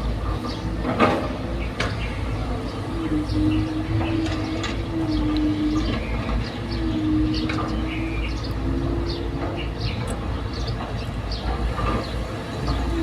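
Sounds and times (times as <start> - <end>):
excavator engine rumble: 0.0 - 13.0
wavering hum: 0.0 - 13.0
metallic clanks and squeaks: 3.1 - 13.0.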